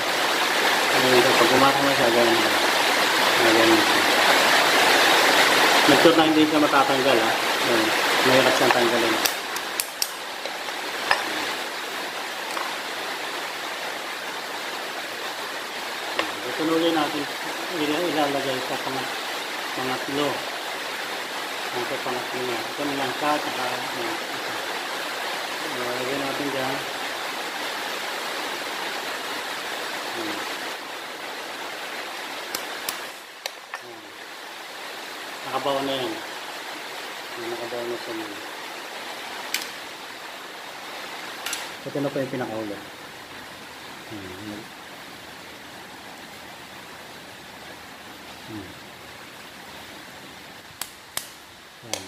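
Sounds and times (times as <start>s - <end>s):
heavy rain on roof: 0.0s - 52.0s
sharp clicks: 50.8s - 52.0s.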